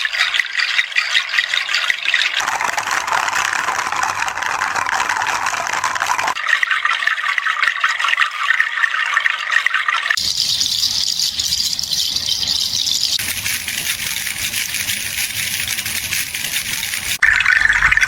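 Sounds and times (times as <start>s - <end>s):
seed rattles shaken: 2.4s - 6.4s, 10.2s - 17.2s.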